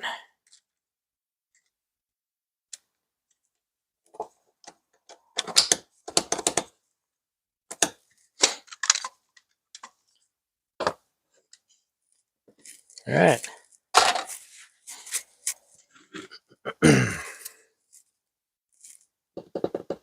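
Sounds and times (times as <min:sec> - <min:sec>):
plastic clicks and rattles: 0:04.1 - 0:06.7, 0:07.7 - 0:10.0.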